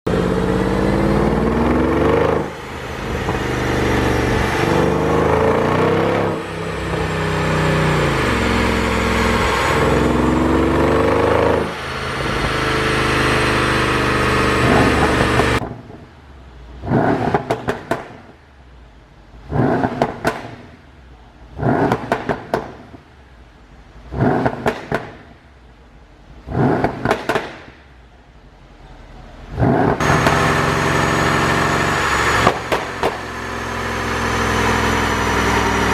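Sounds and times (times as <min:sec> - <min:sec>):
engine revving: 0:00.0 - 0:15.8, 0:16.8 - 0:18.1, 0:19.4 - 0:20.7, 0:21.5 - 0:22.6, 0:24.1 - 0:24.9, 0:26.4 - 0:27.5, 0:29.5 - 0:35.9
car engine running loudly: 0:00.0 - 0:18.2, 0:29.4 - 0:35.9
exhaust pops and crackles: 0:03.1 - 0:03.6, 0:16.9 - 0:18.4, 0:19.5 - 0:20.8, 0:21.6 - 0:23.1, 0:24.1 - 0:25.4, 0:26.4 - 0:27.9, 0:32.4 - 0:33.4.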